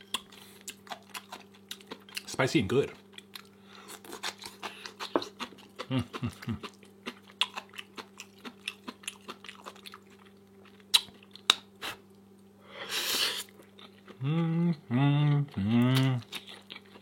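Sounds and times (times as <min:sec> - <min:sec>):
crunchy chewing: 0:00.0 - 0:02.3, 0:02.9 - 0:12.1, 0:15.4 - 0:17.0
faint steady hum: 0:00.0 - 0:17.0.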